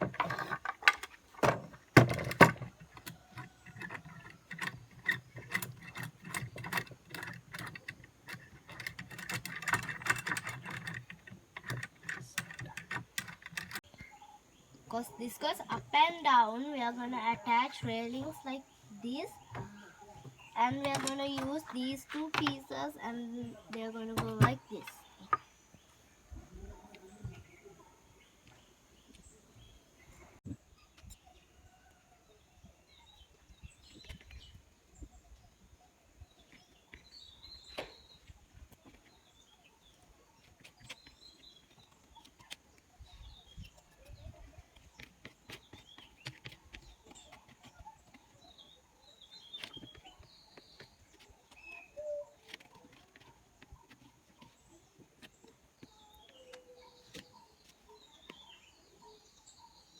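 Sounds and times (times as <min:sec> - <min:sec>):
faint bird calls: 0:35.0 - 0:59.9.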